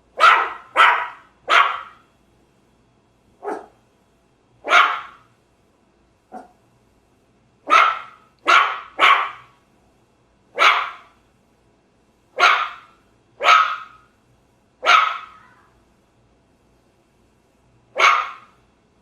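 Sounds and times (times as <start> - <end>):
dog barking: 0.2 - 2.0, 3.4 - 3.8, 4.6 - 5.3, 6.3 - 6.6, 7.6 - 9.6, 10.5 - 11.2, 12.4 - 14.1, 14.8 - 15.8, 17.9 - 18.6.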